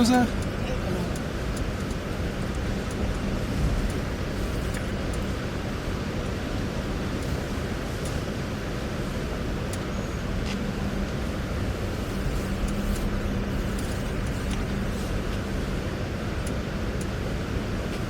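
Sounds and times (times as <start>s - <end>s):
car engine and road noise: 0.0s - 18.0s
faint clicks: 0.1s - 3.2s, 16.3s - 17.2s.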